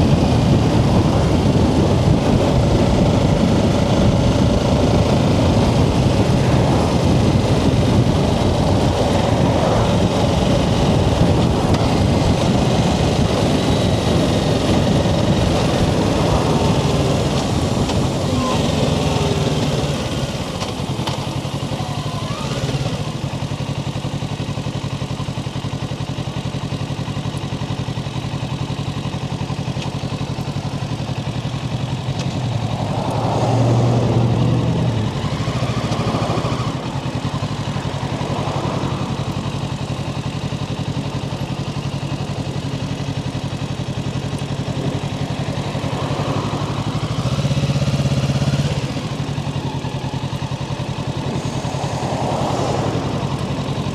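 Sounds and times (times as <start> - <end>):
motorcycle engine revving: 0.0 - 53.9.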